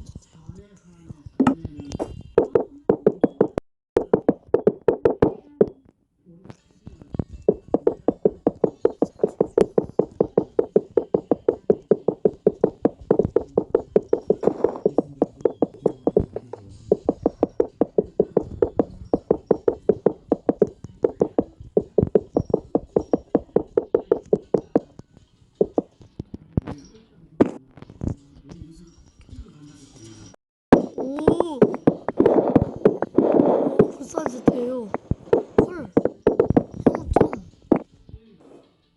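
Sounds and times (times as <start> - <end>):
rapid knocking: 2.4 - 5.4, 7.5 - 24.9, 25.6 - 26.0, 30.7 - 37.9.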